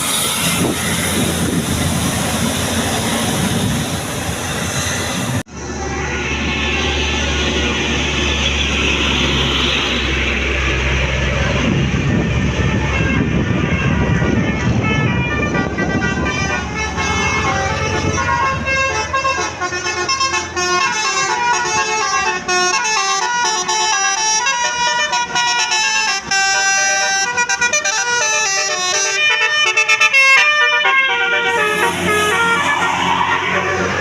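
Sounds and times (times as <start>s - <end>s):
musical bus horn: 11.7s - 34.0s.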